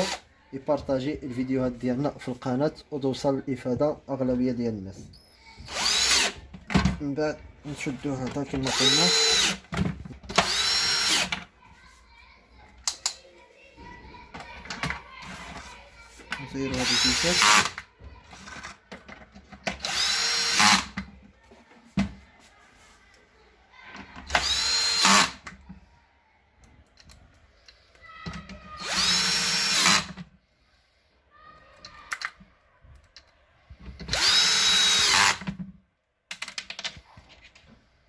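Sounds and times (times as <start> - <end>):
power drill driving screws: 0.0 - 0.2, 5.6 - 6.4, 8.6 - 9.6, 10.3 - 11.4, 16.7 - 17.8, 19.7 - 21.0, 24.3 - 25.4, 28.8 - 30.2, 34.0 - 35.5.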